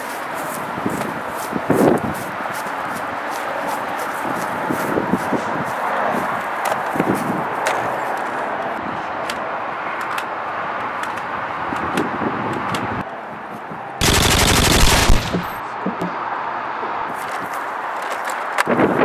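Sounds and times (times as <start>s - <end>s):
automatic machine-gun fire: 14.0s - 15.6s
scattered clicks: 14.0s - 15.6s.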